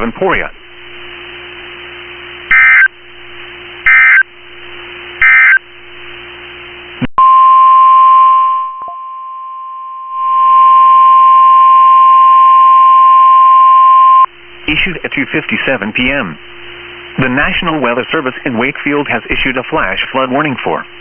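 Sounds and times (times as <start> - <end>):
low hum: 0.0 - 18.8
loud steady alarm tone: 2.5 - 2.9, 3.8 - 4.3, 5.2 - 5.6
digital data bursts: 3.9 - 4.2, 5.2 - 5.6.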